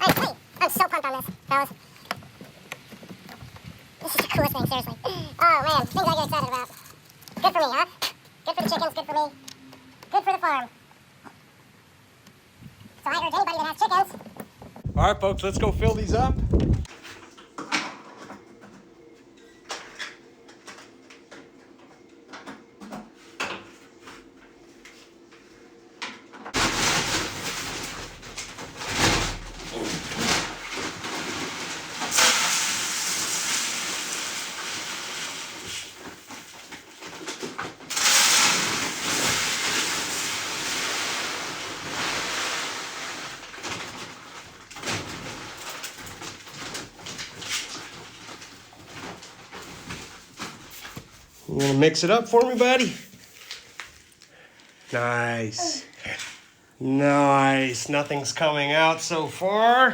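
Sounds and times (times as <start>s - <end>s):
water rushing into bucket: 26.6s - 36.5s, 37.8s - 43.6s.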